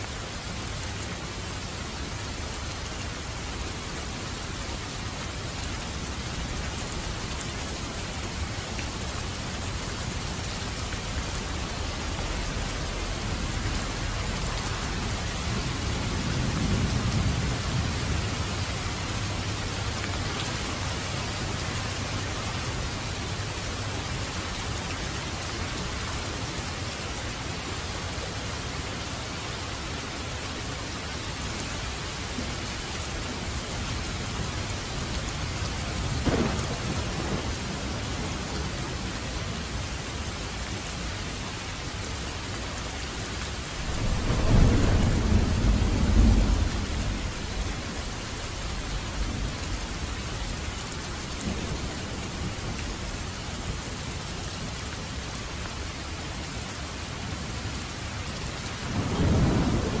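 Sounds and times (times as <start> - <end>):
heavy rain: 0.0 - 60.0
rolling thunder: 35.7 - 38.8, 43.8 - 50.6, 58.8 - 60.0.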